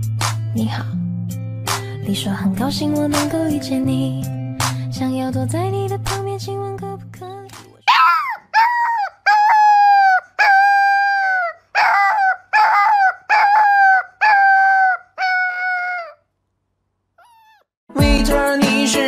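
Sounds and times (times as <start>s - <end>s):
animal high-pitched cries: 7.9s - 16.2s, 17.2s - 17.7s.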